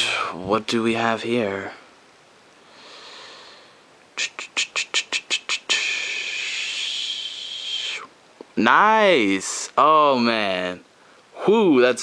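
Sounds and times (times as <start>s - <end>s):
steady held high tone: 4.2s - 10.8s.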